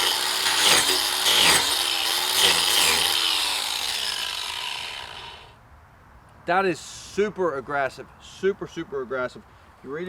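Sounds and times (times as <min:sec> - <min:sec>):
angle grinder cutting into log: 0:00.0 - 0:05.6.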